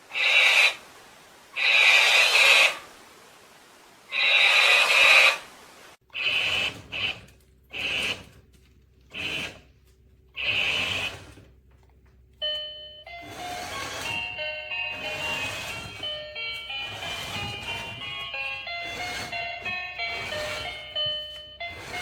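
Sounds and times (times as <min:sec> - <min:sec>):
toy short hissing bursts: 0:00.1 - 0:00.8, 0:01.6 - 0:02.9, 0:04.1 - 0:05.4.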